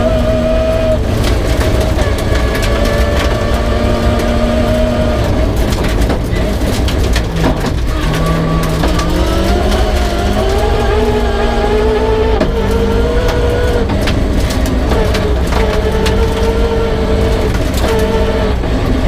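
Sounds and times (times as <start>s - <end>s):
rally car engine revving: 0.0s - 19.0s
knocks and clatter from car: 1.0s - 19.0s.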